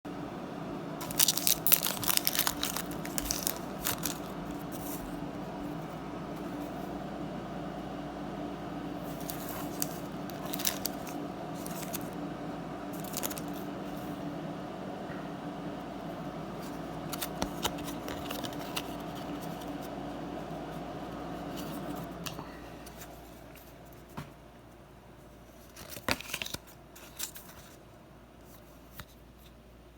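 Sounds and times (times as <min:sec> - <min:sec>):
steady low hum: 0:00.1 - 0:29.9
card packaging tearing: 0:01.0 - 0:05.0, 0:09.1 - 0:12.2, 0:13.0 - 0:13.7, 0:17.1 - 0:19.4, 0:25.7 - 0:27.5
packaging crinkling: 0:01.0 - 0:05.1, 0:09.0 - 0:12.2, 0:13.0 - 0:13.7, 0:17.0 - 0:19.9, 0:25.6 - 0:27.6.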